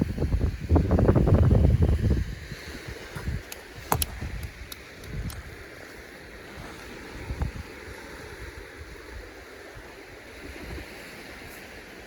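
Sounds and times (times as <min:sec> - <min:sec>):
waves washing on a beach: 0:00.0 - 0:12.0
wind buffeting microphone: 0:00.0 - 0:12.0.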